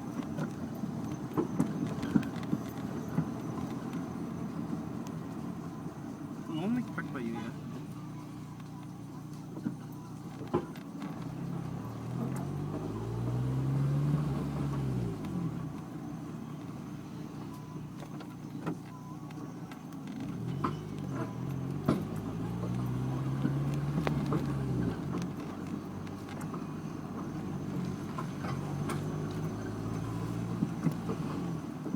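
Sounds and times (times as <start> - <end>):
car engine revving: 11.0 - 18.0, 20.2 - 31.9.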